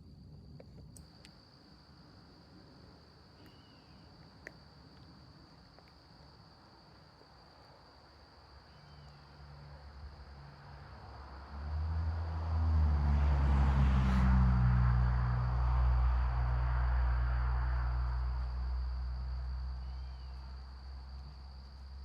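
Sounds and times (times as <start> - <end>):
crickets trilling: 0.0 - 22.0
vehicle engine approaching: 9.5 - 22.0.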